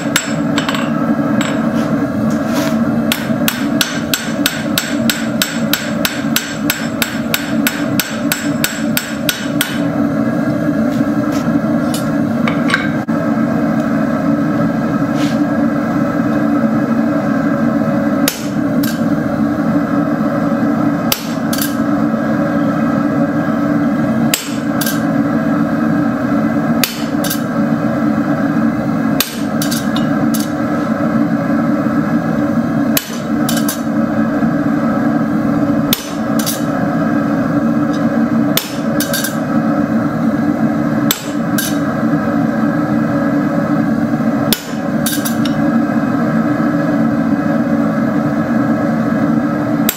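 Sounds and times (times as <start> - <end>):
hammer striking steel on anvil: 0.0 - 1.7, 3.1 - 9.9, 21.1 - 21.8, 24.3 - 25.0, 29.2 - 30.5, 33.0 - 33.9, 35.9 - 36.7, 38.6 - 39.4, 41.1 - 41.8, 44.5 - 45.6.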